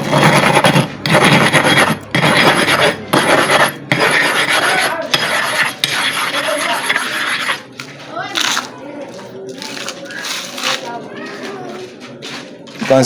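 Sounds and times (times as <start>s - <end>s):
sharpening stone grinding: 0.0s - 7.6s.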